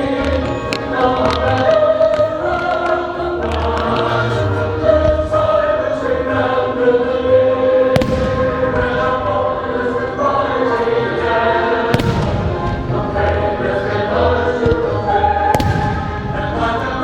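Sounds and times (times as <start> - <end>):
choral singing over low beat: 0.0 - 17.0
firework bang: 8.0 - 9.3, 11.9 - 13.3, 15.5 - 17.0.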